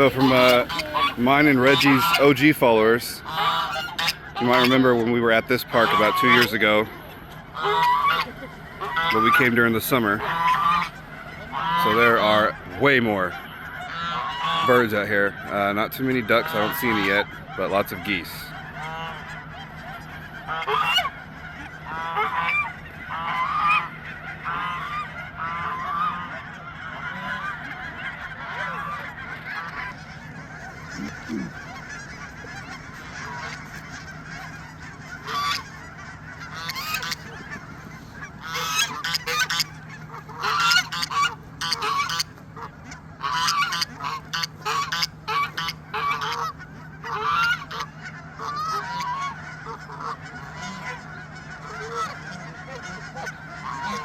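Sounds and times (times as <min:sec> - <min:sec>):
geese honking: 0:00.0 - 0:54.0.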